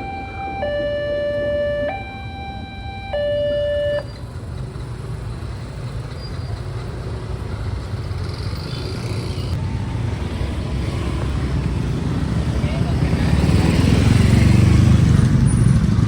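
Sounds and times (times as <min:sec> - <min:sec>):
level crossing alarm tone: 0:00.0 - 0:04.2
road traffic rumble: 0:00.0 - 0:16.0.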